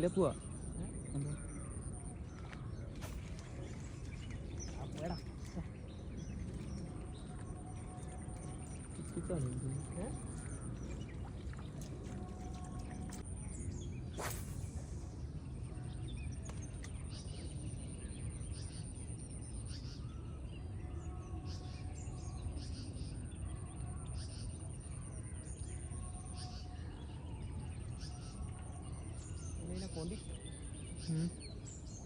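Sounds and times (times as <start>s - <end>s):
small birds chirping: 0.0s - 32.0s
sharp rushing noise: 14.1s - 15.2s.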